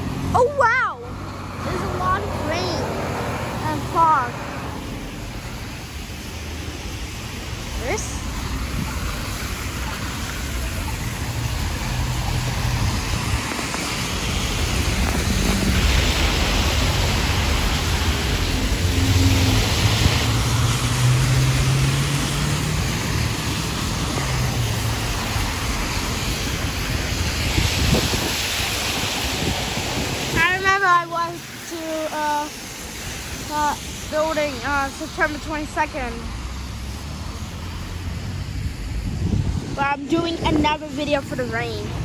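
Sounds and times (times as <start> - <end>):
car engine hum: 0.0 - 28.0
steady rain: 0.0 - 42.0
tyres hissing on wet road: 0.0 - 42.0.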